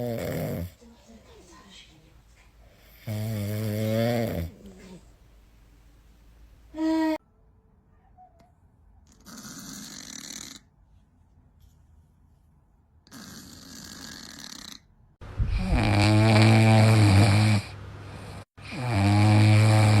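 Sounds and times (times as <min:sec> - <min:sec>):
animal snoring: 0:00.0 - 0:00.8, 0:02.8 - 0:05.0, 0:09.1 - 0:10.7, 0:13.1 - 0:14.9, 0:15.5 - 0:20.0
low steady hum: 0:15.2 - 0:18.5.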